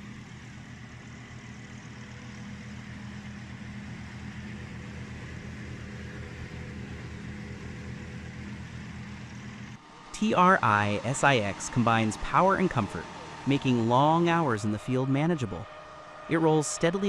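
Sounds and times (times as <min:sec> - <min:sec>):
farm machinery engine running: 0:00.0 - 0:17.0.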